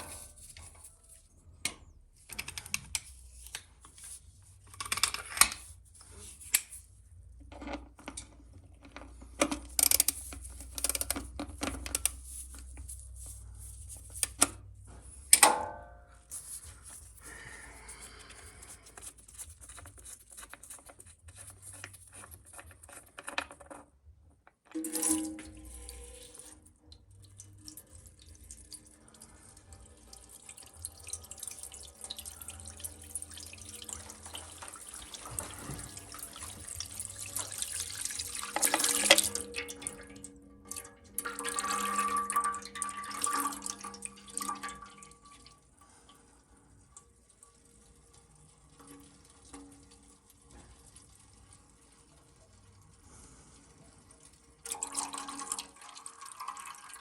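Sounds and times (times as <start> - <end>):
oil pouring into a pan: 24.8 - 57.0.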